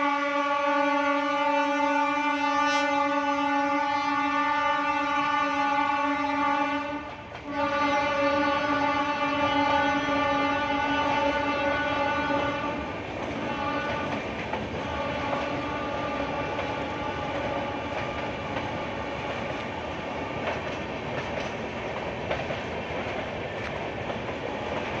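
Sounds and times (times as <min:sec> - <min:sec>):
train horn: 0:00.0 - 0:20.6
train wheels rushing on rails: 0:00.0 - 0:25.0
wheels clicking over rail joints: 0:07.0 - 0:07.6, 0:12.9 - 0:15.6, 0:16.4 - 0:25.0.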